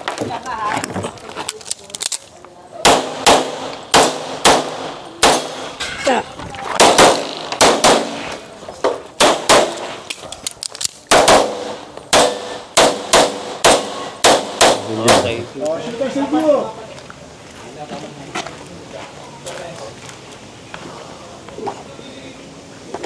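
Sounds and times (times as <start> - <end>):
gunshots with ringing echo: 2.8 - 5.8, 6.8 - 8.3, 11.1 - 15.4.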